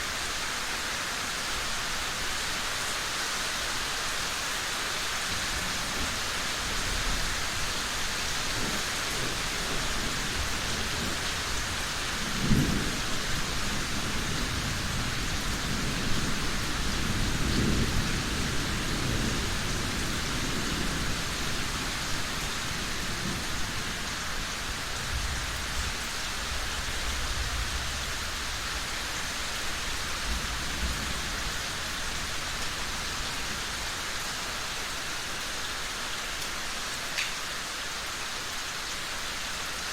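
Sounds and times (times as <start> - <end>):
heavy rain: 0.0 - 39.9
thunder clap and rumble: 8.4 - 28.8.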